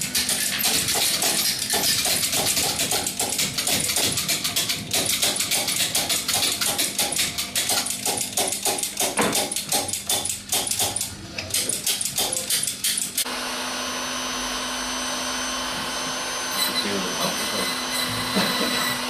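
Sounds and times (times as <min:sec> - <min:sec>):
rapid sharp tapping: 0:00.2 - 0:13.1
key-cutting machine motor humming: 0:11.0 - 0:19.0.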